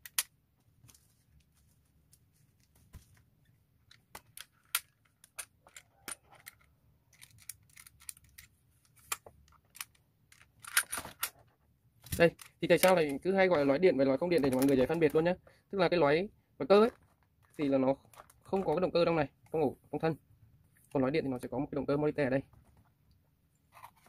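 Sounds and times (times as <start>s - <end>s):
metal lock parts clicking: 3.8s - 11.4s.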